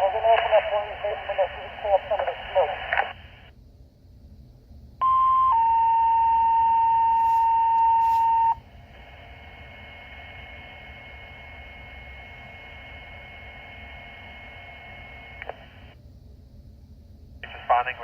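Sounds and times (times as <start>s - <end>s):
radio hiss: 0.0s - 3.5s, 7.1s - 16.0s, 17.4s - 18.0s
two-tone paging tone: 5.0s - 8.6s.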